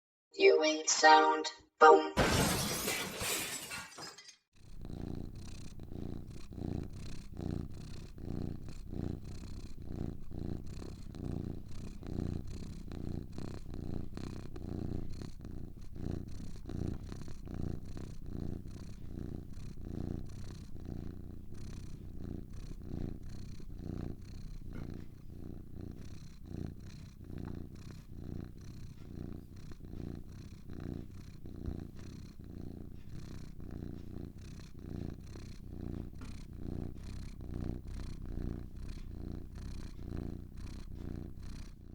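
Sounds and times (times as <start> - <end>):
cat purring: 4.6 - 41.9.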